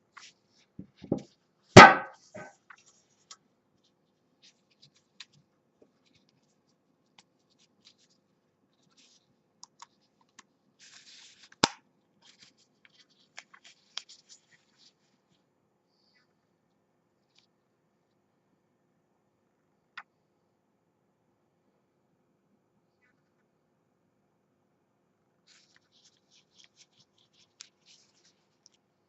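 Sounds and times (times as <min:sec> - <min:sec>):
loud knock with ring: 0:01.8 - 0:02.2.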